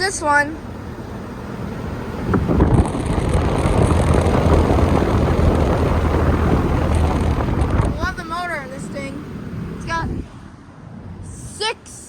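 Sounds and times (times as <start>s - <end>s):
exhaust fan low hum: 0.0s - 12.0s
rush of moving air: 2.1s - 11.6s.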